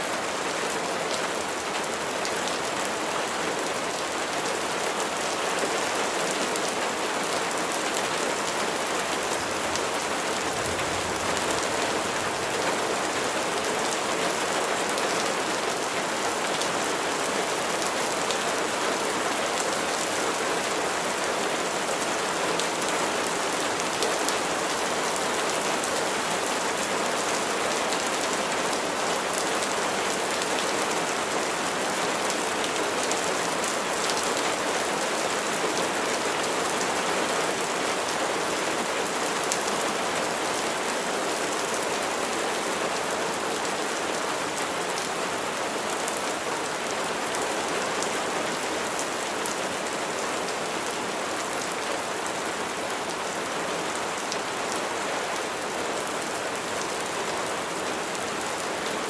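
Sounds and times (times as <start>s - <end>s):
steady rain falling: 0.0s - 59.0s
raindrops pattering on a surface: 8.6s - 14.1s.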